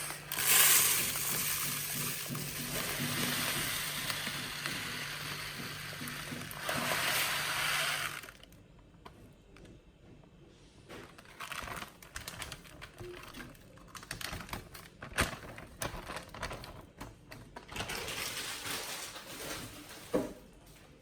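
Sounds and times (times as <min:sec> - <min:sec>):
rice grains rattling: 0:00.0 - 0:08.3
grains pouring: 0:00.0 - 0:08.4.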